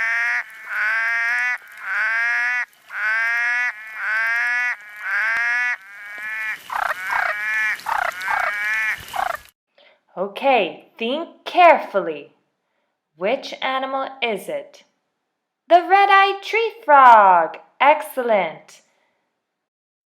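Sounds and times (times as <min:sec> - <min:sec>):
tree frog calling: 0:00.0 - 0:09.5.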